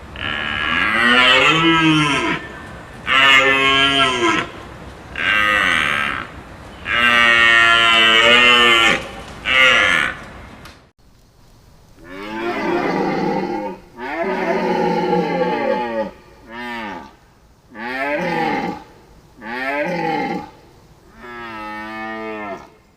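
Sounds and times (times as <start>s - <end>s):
deer calling: 12.0s - 17.1s.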